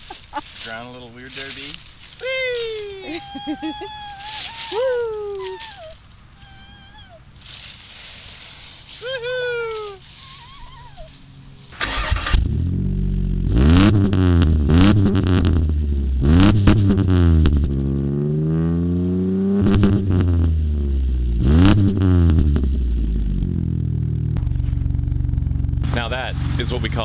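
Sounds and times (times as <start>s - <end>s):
engine starting and revving: 11.7s - 17.8s
engine clattering knocks: 24.4s - 27.0s.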